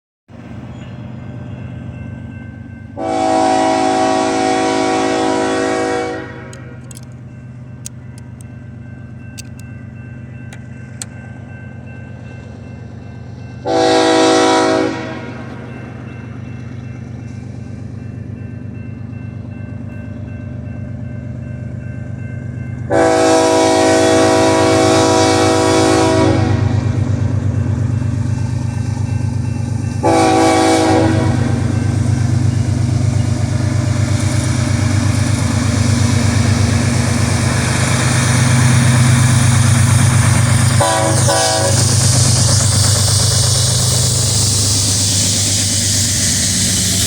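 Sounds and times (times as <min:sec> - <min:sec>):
diesel locomotive rumbling: 0:00.3 - 0:47.0
train horn blasts: 0:03.0 - 0:07.0, 0:13.6 - 0:15.7, 0:22.9 - 0:27.3, 0:29.9 - 0:32.6, 0:40.7 - 0:42.6.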